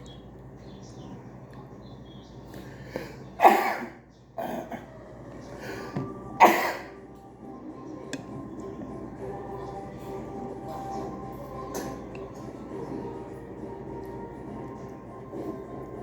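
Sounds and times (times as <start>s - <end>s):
person sneezing: 3.4s - 4.6s, 6.4s - 6.9s.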